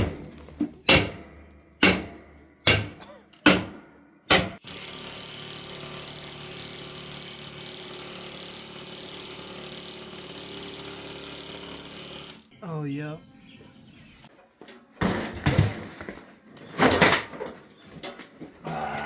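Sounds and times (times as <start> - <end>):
sharp metal strikes: 0.8 - 4.6
steady mechanical running noise: 4.6 - 12.5.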